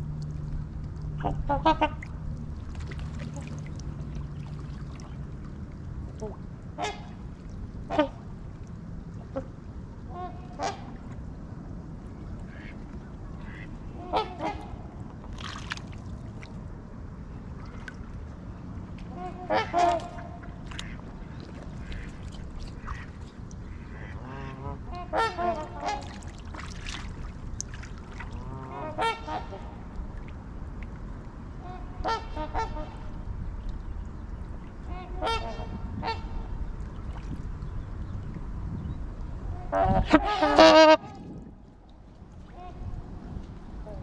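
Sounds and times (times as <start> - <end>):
low background rumble: 0.0 - 44.0
waterfowl honking: 13.4 - 14.8, 19.1 - 21.0, 23.8 - 26.3, 28.6 - 29.8, 31.6 - 33.0, 34.9 - 36.4, 39.6 - 41.2.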